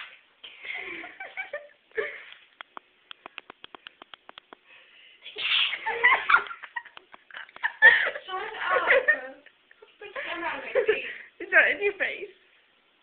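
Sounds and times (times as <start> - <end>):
faint rapid clicks: 2.3 - 4.6
girl sneezing: 5.2 - 5.9.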